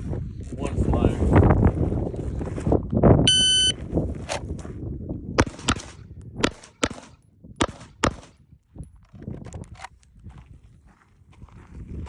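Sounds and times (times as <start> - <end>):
shot timer beep: 3.3 - 3.8
pistol shots: 5.4 - 8.3.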